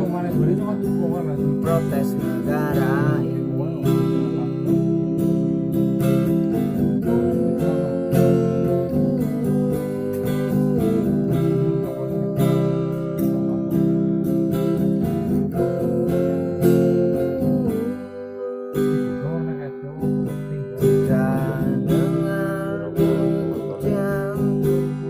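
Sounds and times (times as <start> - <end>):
acoustic guitar strumming: 0.0 - 25.0.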